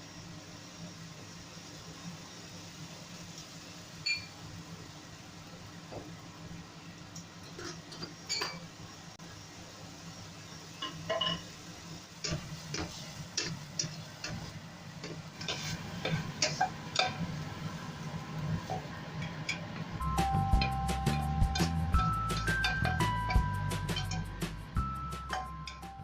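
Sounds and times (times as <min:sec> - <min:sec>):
tableware clinking: 0:07.9 - 0:08.6, 0:10.8 - 0:11.4, 0:21.6 - 0:24.2, 0:25.3 - 0:26.0
steady low hum: 0:16.0 - 0:26.0.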